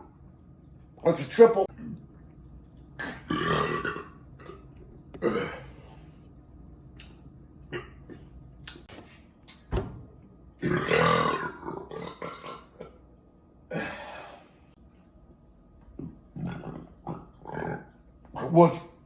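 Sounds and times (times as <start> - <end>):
long loud burp: 3.0 - 4.5, 5.2 - 5.7, 10.6 - 12.9.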